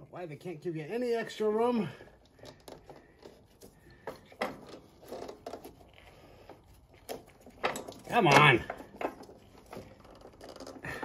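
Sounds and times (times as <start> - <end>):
metal parts clicking and knocking: 7.1 - 11.0.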